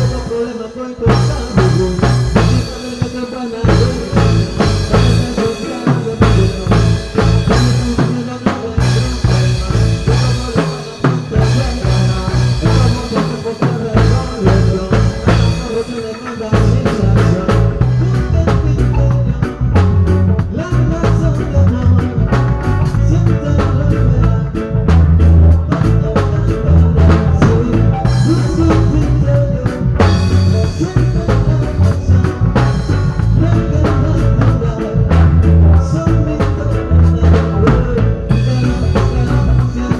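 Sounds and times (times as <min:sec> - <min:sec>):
bass line: 0:00.0 - 0:39.9
drum kit: 0:00.0 - 0:39.9
live reggae band playing: 0:00.0 - 0:39.9.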